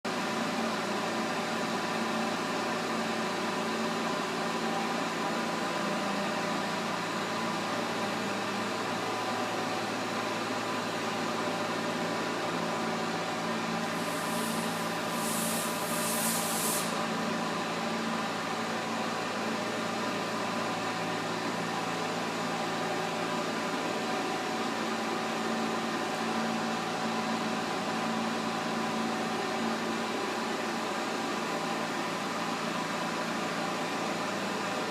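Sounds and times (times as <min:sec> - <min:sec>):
lathe running with mechanical whine: 0:00.2 - 0:30.6
short high hisses: 0:13.9 - 0:17.1.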